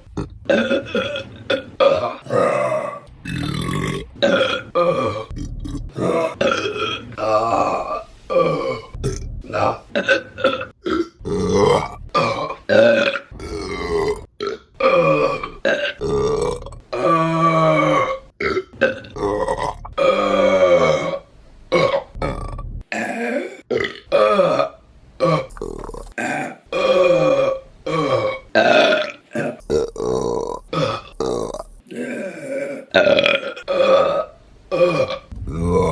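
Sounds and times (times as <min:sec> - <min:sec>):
woman burping: 0:18.0 - 0:35.9.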